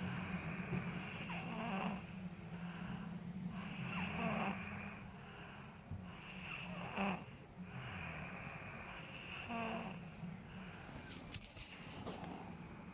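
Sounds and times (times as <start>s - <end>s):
woman snoring: 0.1s - 2.1s, 3.5s - 5.0s, 6.1s - 10.0s.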